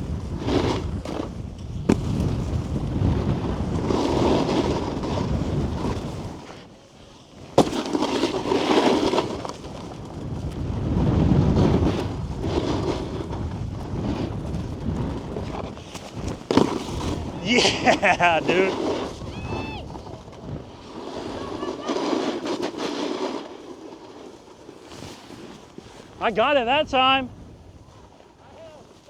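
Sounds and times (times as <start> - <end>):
snowboard landing thud: 0.0 - 6.4, 7.4 - 19.2
wind on microphone: 0.0 - 6.5, 9.2 - 22.4
snowboard scraping on snow: 0.0 - 29.0.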